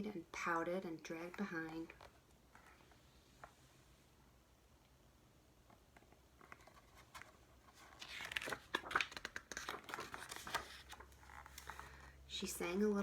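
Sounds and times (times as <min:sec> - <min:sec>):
paper pages rustling and crinkling: 0:05.7 - 0:12.2.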